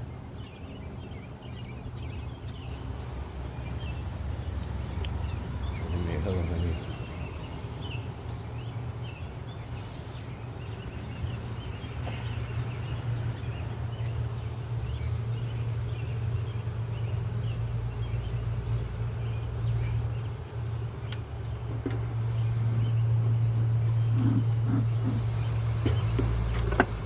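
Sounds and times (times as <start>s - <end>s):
small birds chirping: 0.0s - 27.0s
honeybees buzzing: 14.0s - 27.0s.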